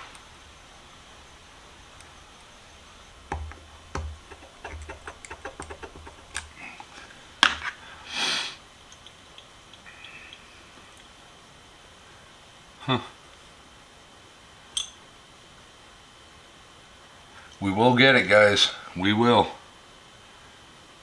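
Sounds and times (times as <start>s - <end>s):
breathy hiss: 0.0s - 8.7s, 9.8s - 11.0s
metal tools clicking on wrench: 14.8s - 15.0s.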